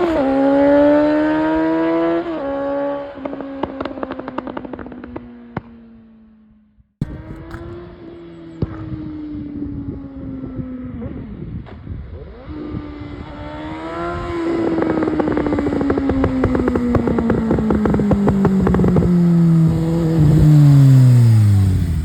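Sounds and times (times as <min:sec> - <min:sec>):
motorcycle engine revving: 0:00.0 - 0:05.6, 0:07.0 - 0:22.0
exhaust crackling and popping: 0:03.6 - 0:05.7, 0:07.0 - 0:08.9, 0:14.3 - 0:22.0.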